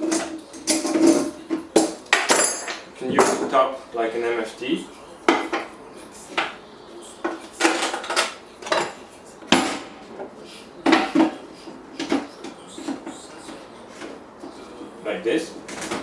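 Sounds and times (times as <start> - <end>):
metal tools knocking on wood: 0.0 - 3.6.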